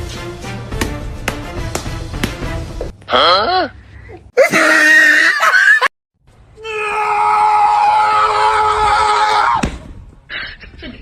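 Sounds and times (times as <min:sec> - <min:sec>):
person screaming: 0:04.4 - 0:05.9, 0:06.6 - 0:09.6.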